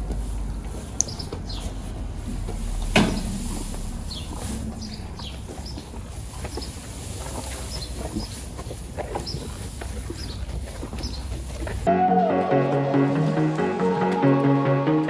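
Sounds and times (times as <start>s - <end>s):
small birds chirping: 0.0s - 11.9s
low steady rumble: 1.7s - 7.5s.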